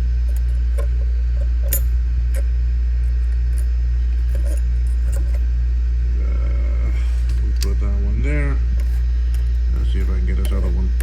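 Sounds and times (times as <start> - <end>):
hot air station hum: 0.0 - 11.0
tools clicking and clinking: 0.3 - 2.5, 3.5 - 5.4.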